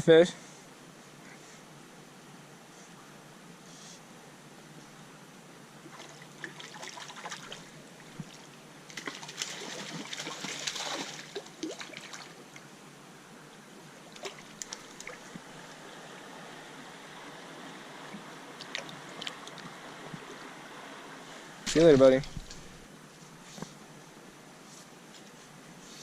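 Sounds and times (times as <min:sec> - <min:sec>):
creek water running: 0:05.8 - 0:23.0
fish splashing in water: 0:05.9 - 0:12.4, 0:14.1 - 0:15.4.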